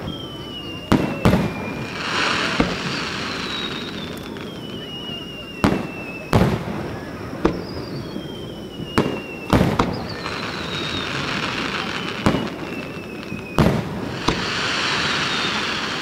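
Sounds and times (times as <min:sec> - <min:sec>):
firework whistling: 0:00.0 - 0:16.0
fireworks bangs: 0:00.0 - 0:16.0
crackle of bursting shells: 0:09.0 - 0:16.0.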